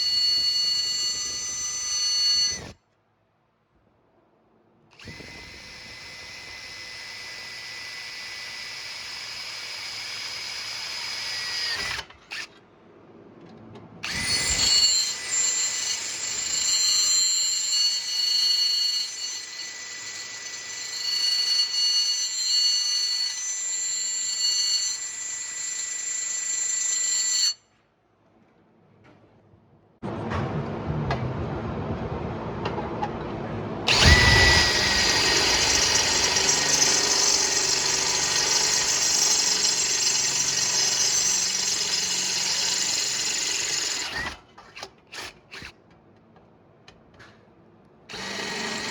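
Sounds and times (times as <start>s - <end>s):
power drill whining: 0.0s - 2.8s, 5.0s - 12.6s, 14.0s - 27.6s, 33.9s - 45.8s, 48.1s - 48.9s.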